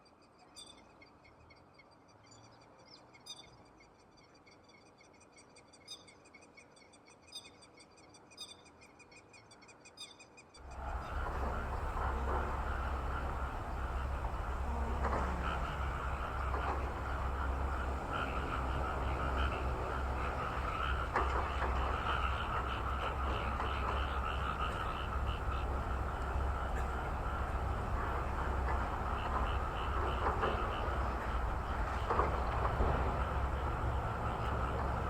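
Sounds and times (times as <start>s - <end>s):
frogs trilling: 0.3s - 35.0s
frog croaks: 10.6s - 35.0s
loud low rumble: 10.6s - 35.0s.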